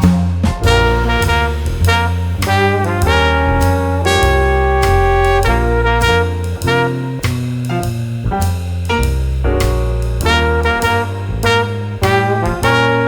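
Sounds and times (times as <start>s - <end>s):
bass: 0.0s - 13.0s
drums: 0.0s - 13.0s
saxophone: 0.6s - 7.4s.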